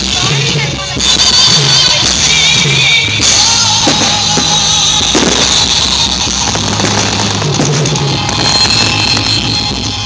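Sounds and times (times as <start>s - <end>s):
loud music with held notes: 0.0s - 10.0s
sustained bass line: 3.4s - 10.0s.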